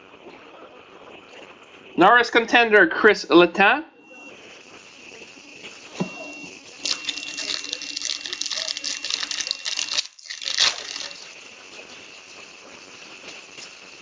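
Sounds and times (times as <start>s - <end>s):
foil wrapper crinkling: 6.8s - 11.4s.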